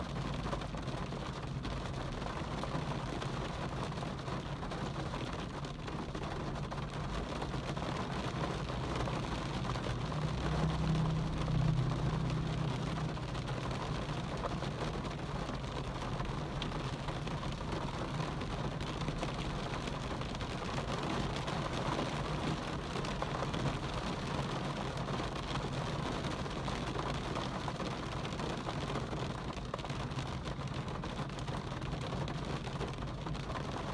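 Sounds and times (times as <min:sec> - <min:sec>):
steady rain falling: 0:00.0 - 0:33.9
low rumble: 0:09.1 - 0:15.0.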